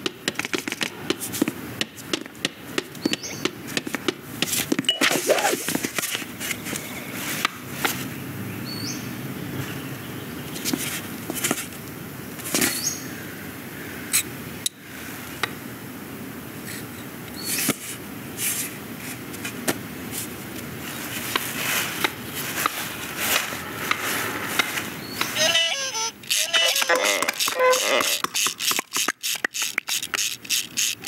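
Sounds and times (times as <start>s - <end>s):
brief scrapes: 5.0s - 5.8s
sharp clicks and taps: 26.7s - 31.0s.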